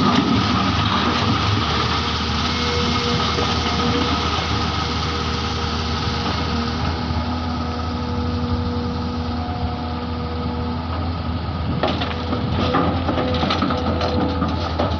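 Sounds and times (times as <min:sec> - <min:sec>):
excavator diesel engine running: 0:00.0 - 0:14.9
cracks and knocks of stones: 0:11.8 - 0:14.9.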